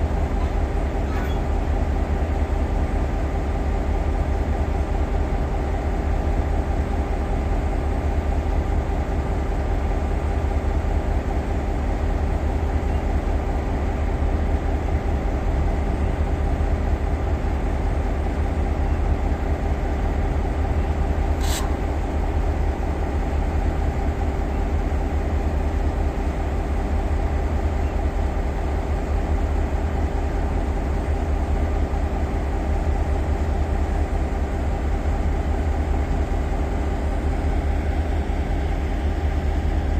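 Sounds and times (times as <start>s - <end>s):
short click: 21.4s - 21.8s.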